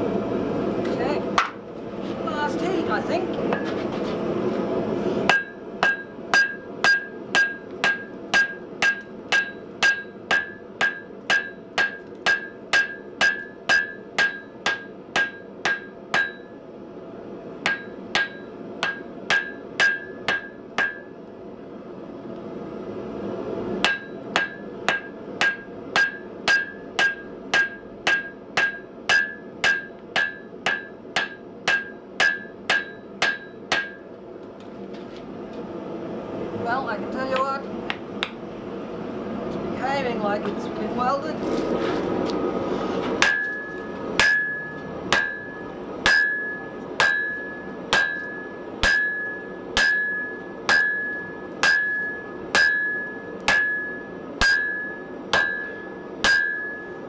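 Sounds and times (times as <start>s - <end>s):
hammer striking steel on anvil: 5.3s - 16.6s, 17.6s - 21.2s, 23.8s - 34.1s, 43.2s - 57.0s.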